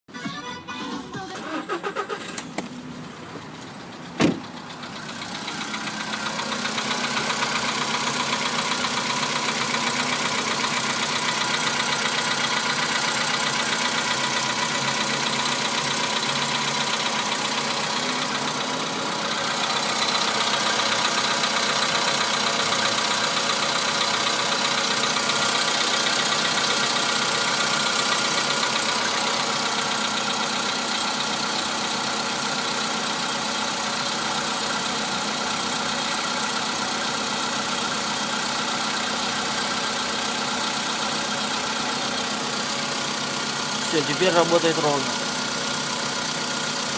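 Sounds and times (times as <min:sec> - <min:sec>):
car engine knocking: 0:02.8 - 0:46.9.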